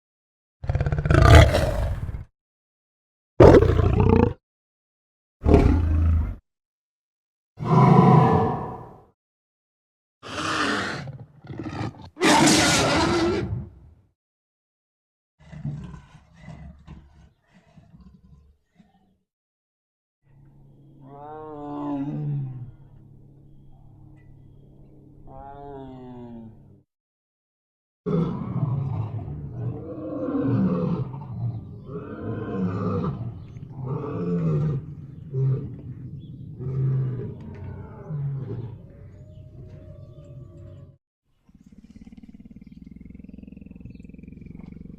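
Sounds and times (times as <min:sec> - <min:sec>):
big cat growl: 0:00.6 - 0:02.3, 0:03.4 - 0:04.4, 0:05.4 - 0:06.4, 0:10.2 - 0:13.6, 0:15.4 - 0:19.2, 0:21.0 - 0:22.9, 0:28.1 - 0:44.9
big cat roar: 0:00.6 - 0:02.3, 0:03.4 - 0:04.4, 0:05.4 - 0:06.4, 0:07.6 - 0:09.1, 0:10.2 - 0:13.7, 0:15.4 - 0:19.1, 0:21.0 - 0:22.9, 0:25.3 - 0:26.6, 0:28.1 - 0:44.9
big cat snarling: 0:00.6 - 0:02.3, 0:03.4 - 0:04.4, 0:10.2 - 0:13.5, 0:15.4 - 0:19.1, 0:28.1 - 0:44.9.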